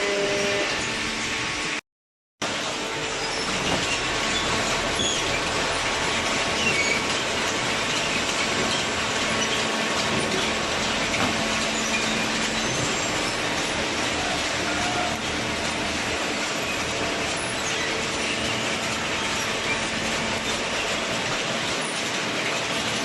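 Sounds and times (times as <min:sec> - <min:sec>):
baler machine running: 0:02.4 - 0:23.0.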